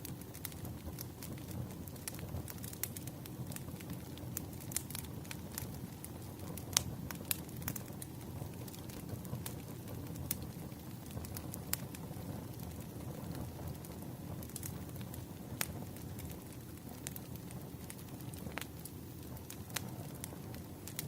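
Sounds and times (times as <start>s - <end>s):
low fire rumble: 0.0s - 21.0s
wood fire crackling and popping: 0.0s - 21.0s.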